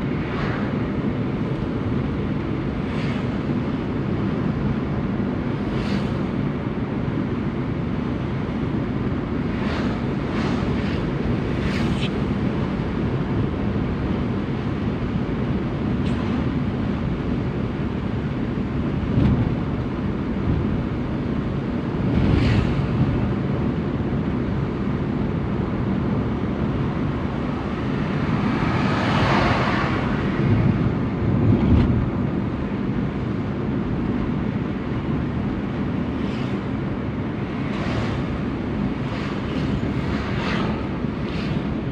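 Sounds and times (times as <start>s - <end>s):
wind buffeting microphone: 29.8s - 40.0s.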